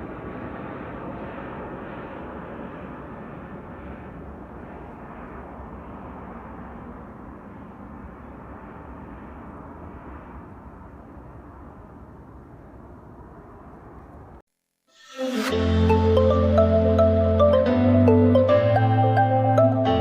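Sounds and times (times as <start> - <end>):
airplane engine rumble: 0.0 - 14.5.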